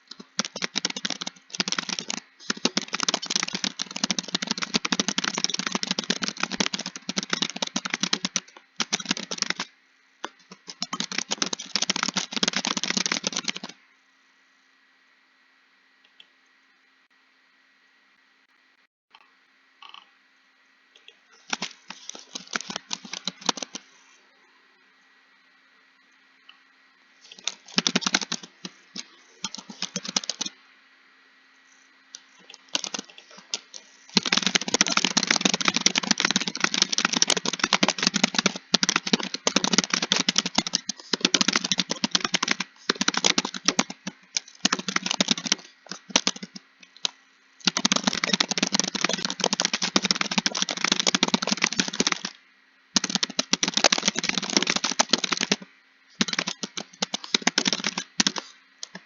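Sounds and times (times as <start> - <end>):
keyboard typing: 0.0 - 13.8, 21.4 - 23.9, 27.2 - 30.6, 32.2 - 52.4, 53.0 - 59.0.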